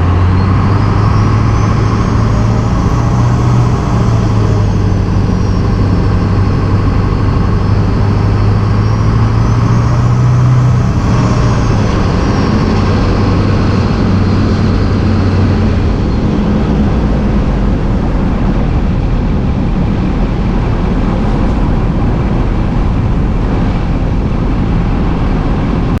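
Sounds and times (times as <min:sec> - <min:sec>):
high turbo whistle: 0:00.0 - 0:18.2
diesel engine running: 0:00.0 - 0:26.0.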